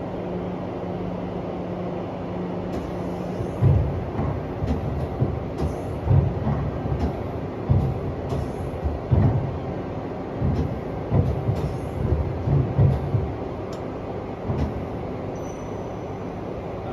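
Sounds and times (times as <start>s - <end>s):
lathe mechanical hum: 0.0s - 16.9s
low heavy thuds: 3.4s - 13.7s.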